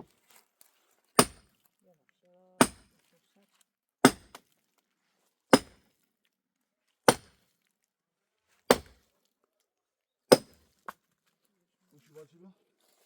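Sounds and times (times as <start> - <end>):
chopping blows into wood: 1.2 - 1.4, 4.0 - 4.4, 8.7 - 9.0.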